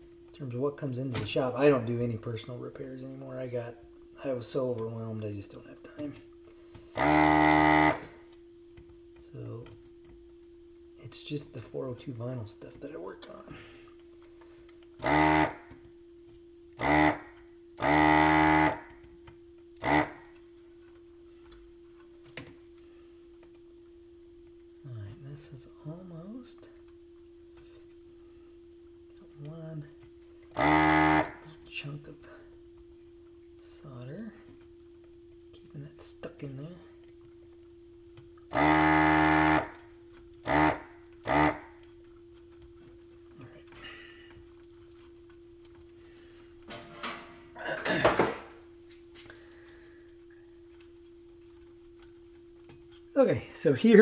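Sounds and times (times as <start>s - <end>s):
faint steady hum: 0.0s - 54.0s
desoldering pump buzzing: 6.2s - 10.2s, 13.9s - 22.5s, 29.4s - 31.7s, 38.2s - 46.8s
desoldering pump motor buzz: 6.9s - 8.3s, 15.0s - 15.9s, 16.8s - 19.1s, 19.8s - 20.4s, 30.4s - 31.6s, 38.5s - 42.0s.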